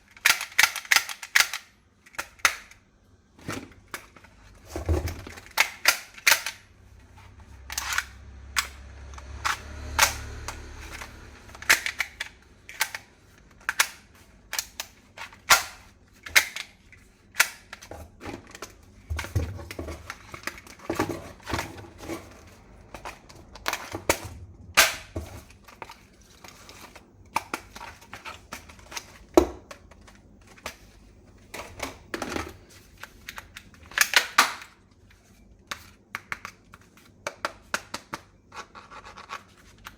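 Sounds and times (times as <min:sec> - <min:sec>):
toy gun clicks and snaps: 0:00.1 - 0:02.8, 0:05.5 - 0:06.6, 0:07.7 - 0:16.7, 0:33.3 - 0:34.7.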